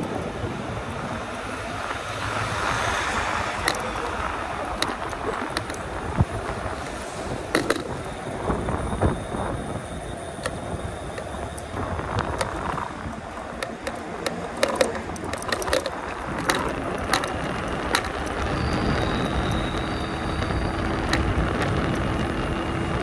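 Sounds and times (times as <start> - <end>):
faint steady whine: 0.0 - 23.0
road rumble: 0.0 - 23.0
wind: 0.0 - 23.0
rattling clicks: 3.5 - 8.6, 10.3 - 19.7.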